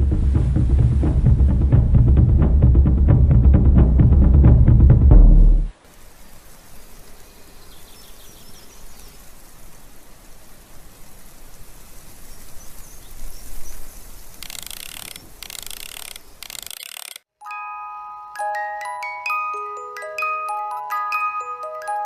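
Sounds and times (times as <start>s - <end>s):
steady outdoor hiss: 0.0s - 22.0s
rustling hiss bursts: 5.7s - 17.3s.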